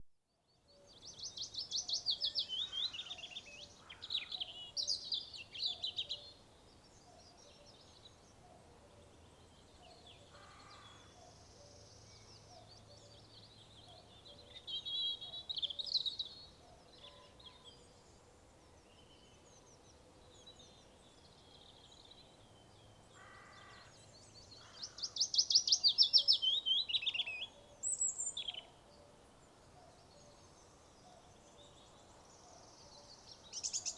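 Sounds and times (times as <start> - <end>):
quiet bird calls: 7.0 - 22.3, 23.1 - 33.9.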